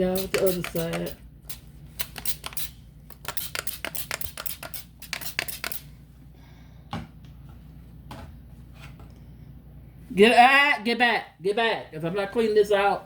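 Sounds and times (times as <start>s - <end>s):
spray bottle squirting: 0.1s - 5.8s.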